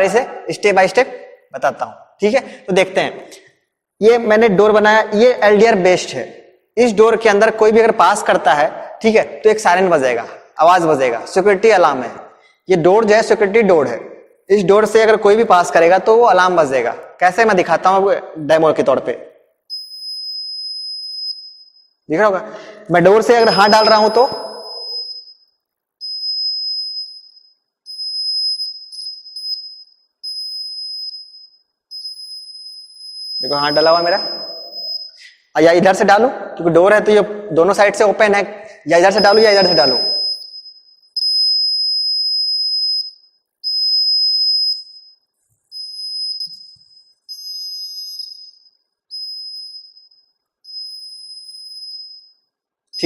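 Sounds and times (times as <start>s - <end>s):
high-pitched alarm buzzer: 23.3s - 25.4s, 26.0s - 35.2s, 39.2s - 45.2s.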